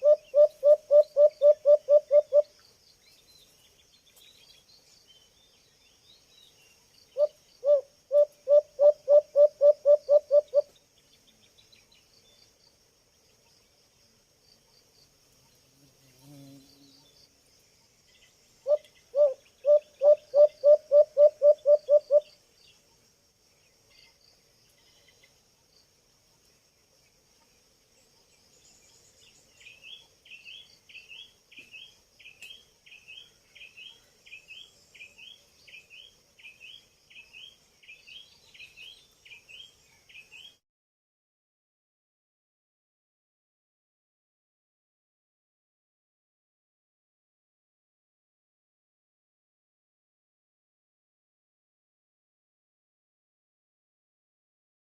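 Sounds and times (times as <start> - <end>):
dove hooting: 0.0 - 2.5, 7.2 - 10.7, 18.7 - 22.3
insects droning: 0.0 - 40.6.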